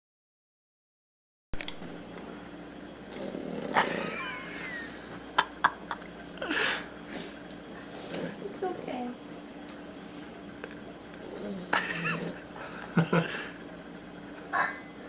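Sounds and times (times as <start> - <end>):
puppy snoring breaths: 3.1 - 4.0, 6.7 - 9.1, 11.2 - 12.8.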